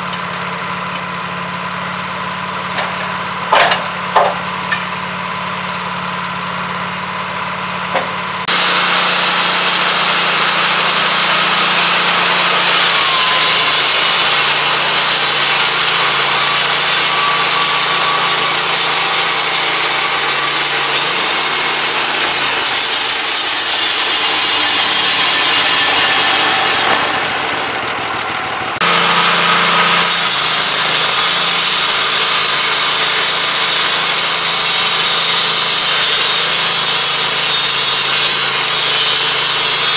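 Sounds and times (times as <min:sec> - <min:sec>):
sawmill engine running: 0:00.0 - 0:39.9
band saw blade hiss and whine: 0:07.9 - 0:28.2, 0:28.8 - 0:39.9.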